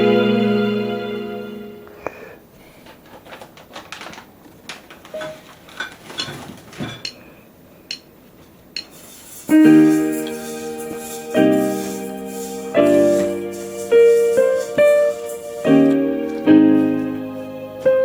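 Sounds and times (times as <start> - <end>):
electronic keyboard chord: 0.0 - 1.8, 9.5 - 18.0.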